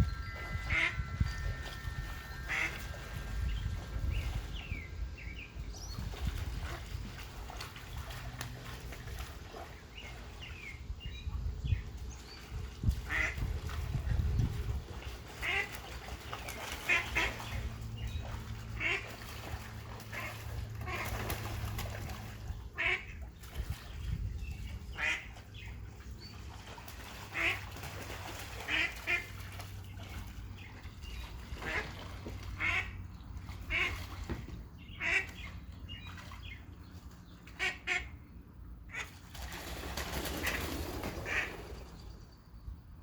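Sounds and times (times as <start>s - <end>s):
steady low hum: 0.0s - 43.0s
ducks quacking: 0.2s - 3.4s, 18.8s - 19.1s, 22.8s - 23.2s, 24.9s - 25.3s, 27.1s - 27.7s, 31.6s - 34.2s, 34.9s - 35.5s, 37.5s - 38.2s, 41.3s - 41.6s.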